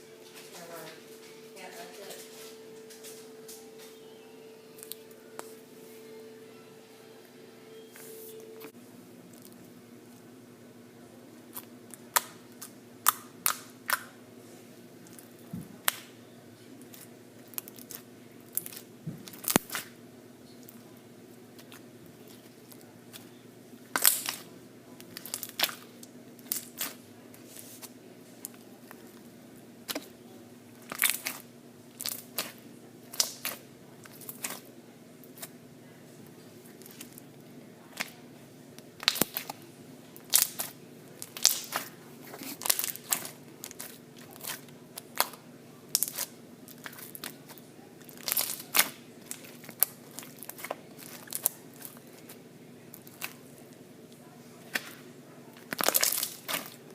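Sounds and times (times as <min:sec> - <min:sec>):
faint steady hum: 0:00.0 - 0:56.9
slime popping and crackling: 0:16.9 - 0:19.9, 0:23.9 - 0:27.0, 0:30.9 - 0:35.5, 0:39.0 - 0:39.6, 0:40.2 - 0:53.4, 0:55.6 - 0:56.8.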